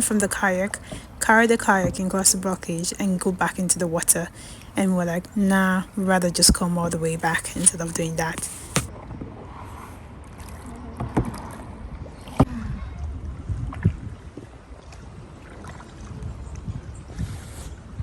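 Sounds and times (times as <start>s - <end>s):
paddle strokes in water: 7.7s - 12.5s, 13.6s - 18.0s.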